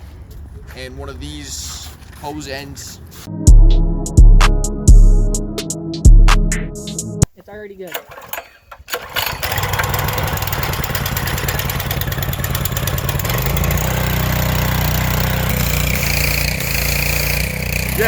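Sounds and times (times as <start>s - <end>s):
small gas engine running: 7.9s - 18.0s.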